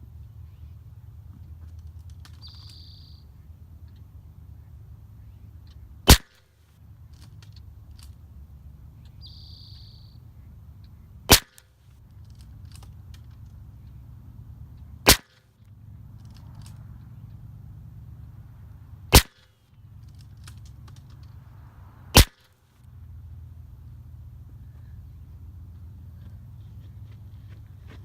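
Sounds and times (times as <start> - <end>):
gunshot cracks: 6.1 - 6.4, 11.3 - 11.6, 15.0 - 15.5, 19.1 - 19.5, 22.1 - 22.5.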